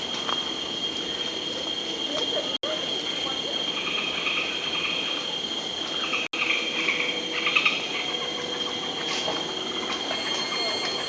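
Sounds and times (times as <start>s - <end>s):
insects droning high-pitched: 0.0s - 11.0s
chirping calls: 6.0s - 11.0s.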